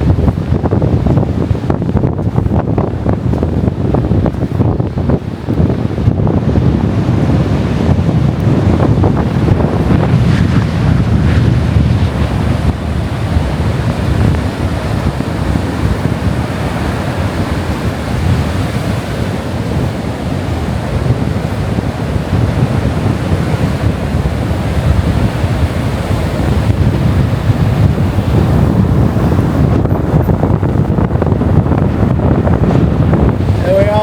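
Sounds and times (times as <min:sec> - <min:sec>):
wind blasting microphone: 0:00.0 - 0:34.0
surf breaking: 0:07.1 - 0:34.0.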